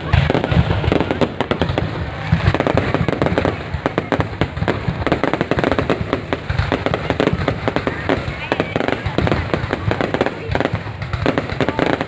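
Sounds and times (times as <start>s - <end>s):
deep firework booms: 0.0s - 12.0s
fireworks bangs and crackles: 0.0s - 12.0s.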